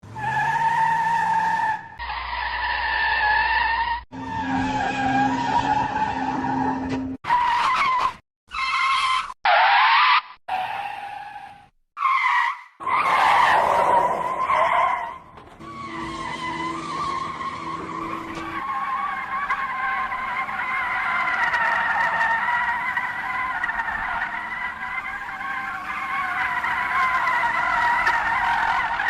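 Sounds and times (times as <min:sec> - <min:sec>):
car tyres squealing: 0:00.0 - 0:29.0.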